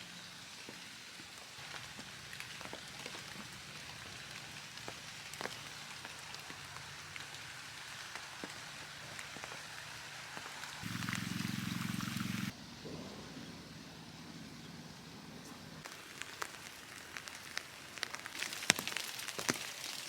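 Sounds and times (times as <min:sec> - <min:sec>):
campfire crackling and popping: 0:01.6 - 0:12.5, 0:15.8 - 0:20.0
low steady hum: 0:10.8 - 0:15.8.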